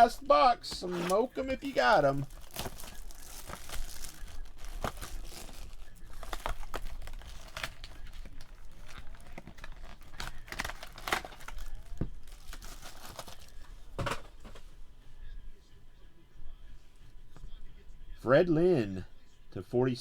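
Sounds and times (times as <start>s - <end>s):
plastic wrapping tearing and crinkling: 0.8s - 14.6s.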